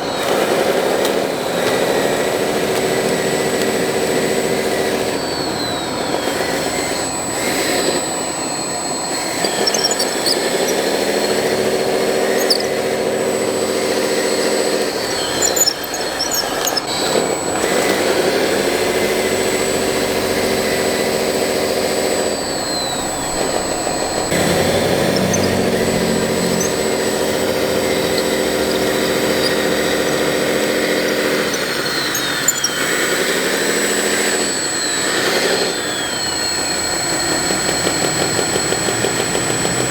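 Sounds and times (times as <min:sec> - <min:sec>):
electric motor whining: 0:00.0 - 0:39.9.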